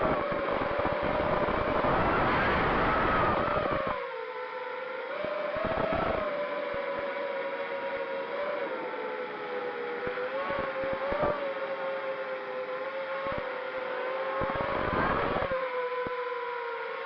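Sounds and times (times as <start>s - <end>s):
rushing air noise: 1.1s - 3.9s.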